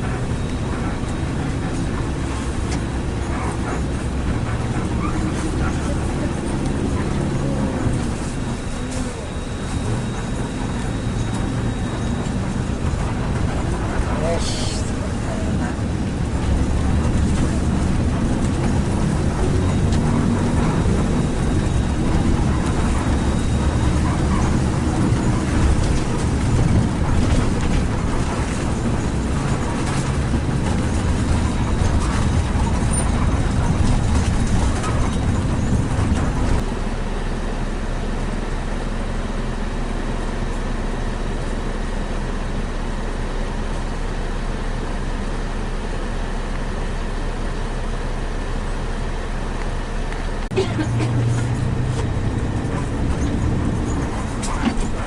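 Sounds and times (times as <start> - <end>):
bus engine and road noise: 0.0 - 55.0.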